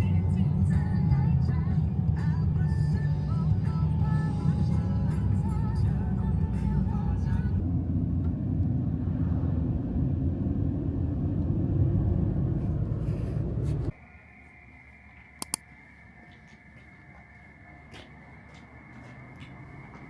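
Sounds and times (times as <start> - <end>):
steady high hum: 0.0 - 9.4, 12.6 - 20.0
loud low rumble: 0.0 - 13.9
quick clicks: 15.4 - 15.6.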